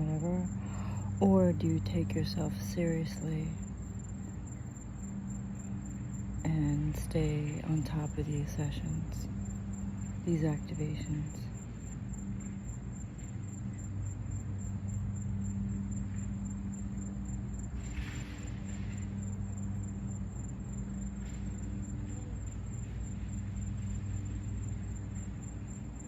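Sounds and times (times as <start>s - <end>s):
low engine-like drone: 0.0s - 26.0s.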